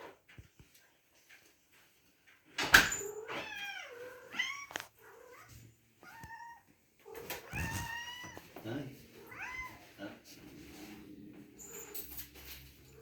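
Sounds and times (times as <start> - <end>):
cat meowing: 3.0 - 8.5, 9.2 - 9.8.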